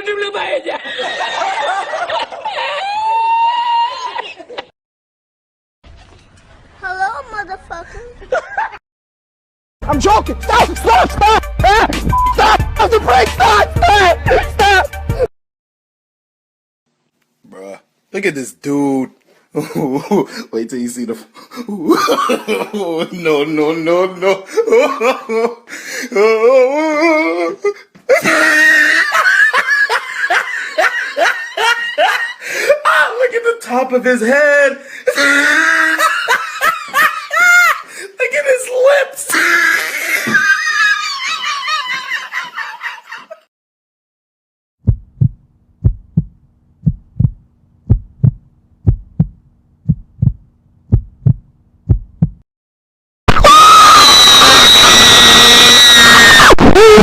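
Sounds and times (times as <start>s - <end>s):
person laughing hard: 10.6s - 15.3s, 21.6s - 23.3s, 24.2s - 27.5s, 28.1s - 32.8s, 35.1s - 37.9s, 39.6s - 43.5s
heartbeat thumps: 11.0s - 12.6s, 44.8s - 52.4s.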